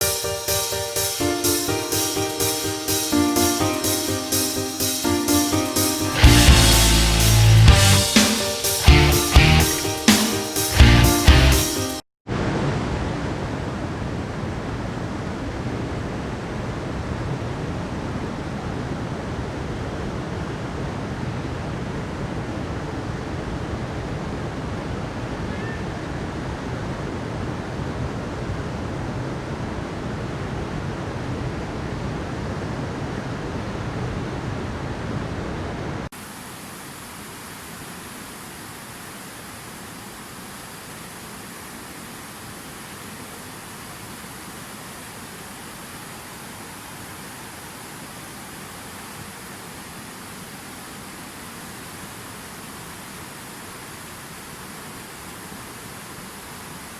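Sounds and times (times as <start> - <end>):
rushing water roar: 12.3 - 56.9.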